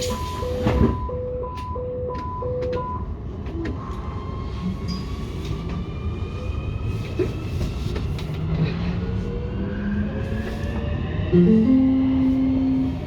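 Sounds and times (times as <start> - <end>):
subway train rumbling: 0.0 - 13.0.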